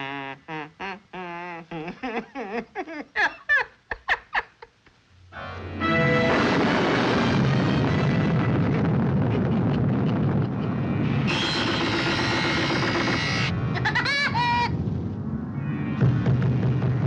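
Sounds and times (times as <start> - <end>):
orchestral music: 5.4 - 8.2.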